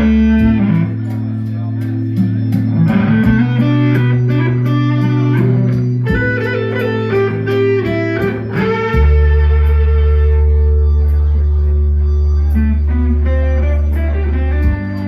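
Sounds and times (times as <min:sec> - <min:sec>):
electric guitar playing: 0:00.0 - 0:15.0
held bass line: 0:00.0 - 0:15.0
steady ticking beat: 0:02.1 - 0:09.6.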